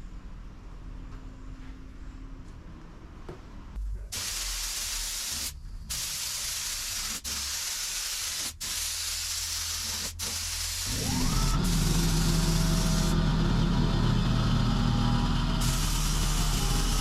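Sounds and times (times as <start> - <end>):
pressurised spray hissing: 4.1 - 13.1, 15.6 - 17.0.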